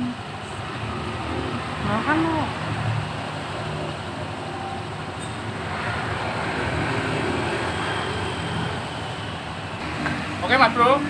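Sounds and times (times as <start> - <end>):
scooter engine growling drone: 0.0 - 11.0
faint whistle-like tone: 7.6 - 9.6.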